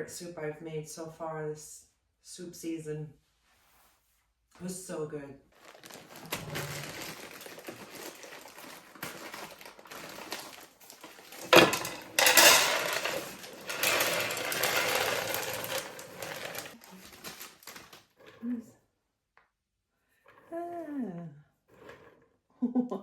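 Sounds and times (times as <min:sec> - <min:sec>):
things clattering and rustling: 0:05.6 - 0:18.3.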